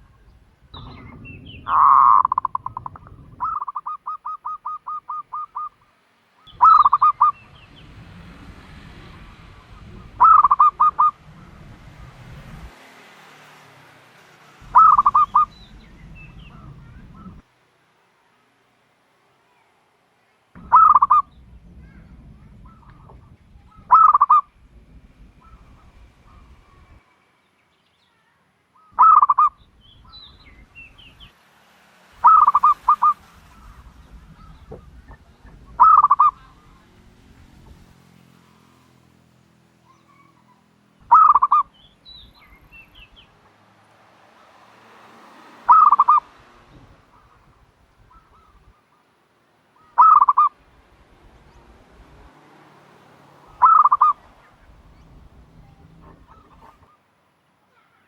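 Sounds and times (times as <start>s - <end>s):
dove cooing: 0.0s - 5.8s, 6.5s - 12.7s, 14.6s - 17.4s, 20.6s - 27.0s, 28.8s - 31.3s, 32.2s - 37.8s, 39.9s - 43.4s, 45.6s - 48.9s, 49.8s - 50.6s, 53.3s - 57.0s.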